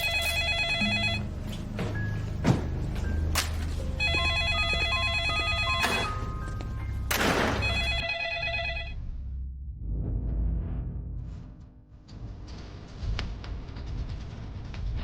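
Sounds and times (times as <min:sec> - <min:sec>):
phone ringtone warbling: 0:00.0 - 0:01.2, 0:04.0 - 0:06.3, 0:07.6 - 0:09.0
background music: 0:00.0 - 0:10.1.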